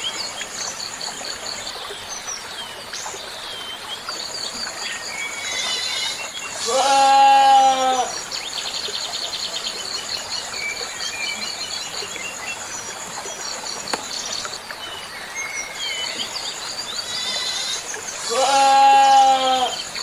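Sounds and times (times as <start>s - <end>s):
insects trilling: 0.0s - 9.0s, 9.7s - 20.0s
goat bleating: 6.6s - 8.1s, 18.3s - 19.7s.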